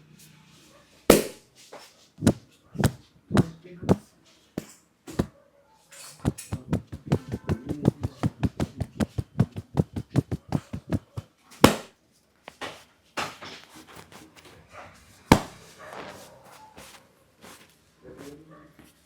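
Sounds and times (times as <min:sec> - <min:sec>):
hands patting a head: 0:01.1 - 0:01.4, 0:02.2 - 0:04.1, 0:06.2 - 0:11.9, 0:15.3 - 0:17.7
sharp slaps: 0:01.1 - 0:01.4, 0:06.2 - 0:11.9, 0:15.3 - 0:15.6.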